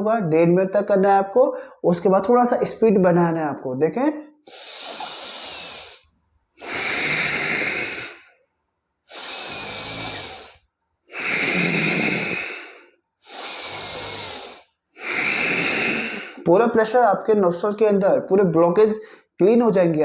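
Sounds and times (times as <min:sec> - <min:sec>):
man breathing forcefully through nose: 0:04.4 - 0:08.4, 0:09.0 - 0:16.4.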